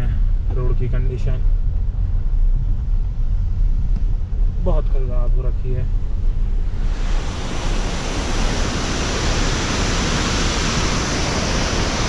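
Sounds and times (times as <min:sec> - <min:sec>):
car driving on rough road: 0:00.0 - 0:07.9
loud rushing hiss: 0:06.4 - 0:12.0.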